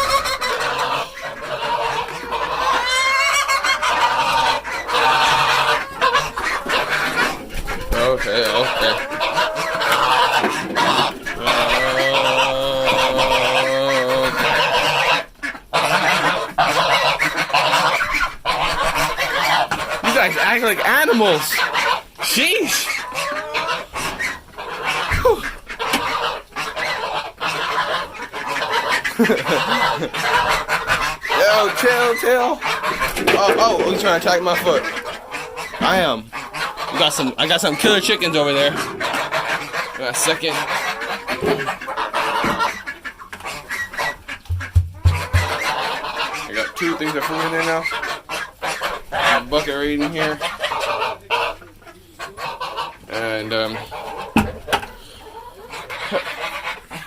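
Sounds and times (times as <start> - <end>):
chickens clucking: 0.0 - 57.0.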